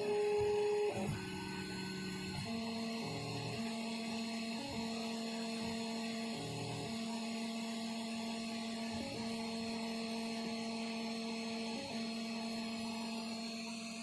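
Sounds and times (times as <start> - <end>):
printer stepper motors humming: 0.0 - 7.7.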